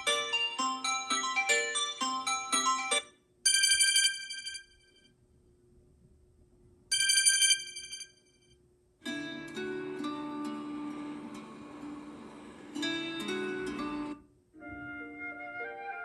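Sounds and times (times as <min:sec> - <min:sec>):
high trilling phone ring: 0:00.0 - 0:05.0, 0:06.9 - 0:08.4.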